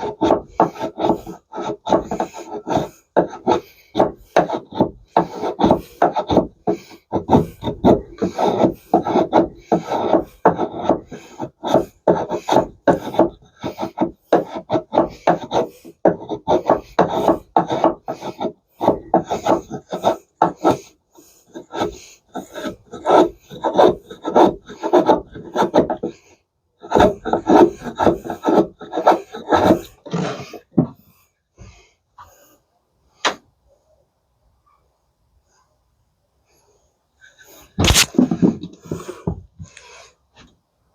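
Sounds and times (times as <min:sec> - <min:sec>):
blade rasping on sharpener: 0:37.8 - 0:38.1.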